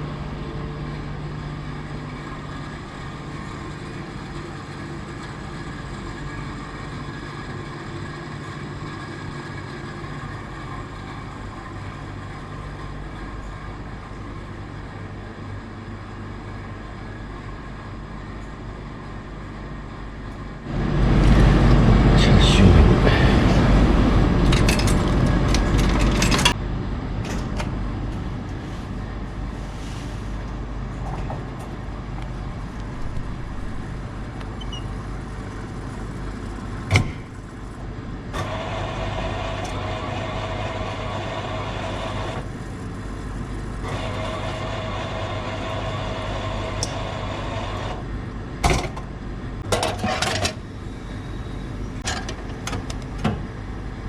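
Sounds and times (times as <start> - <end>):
vehicle engine rumbling: 20.6 - 26.6.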